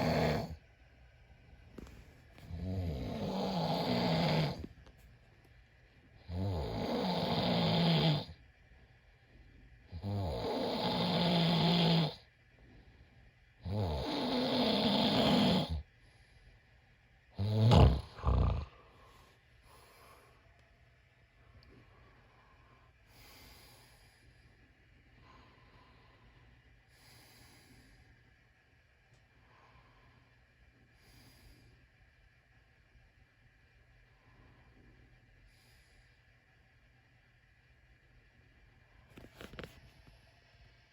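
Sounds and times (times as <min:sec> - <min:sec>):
man snoring: 0:00.0 - 0:00.6, 0:02.4 - 0:04.7, 0:06.2 - 0:08.4, 0:09.9 - 0:12.2, 0:13.6 - 0:15.8, 0:17.4 - 0:18.9.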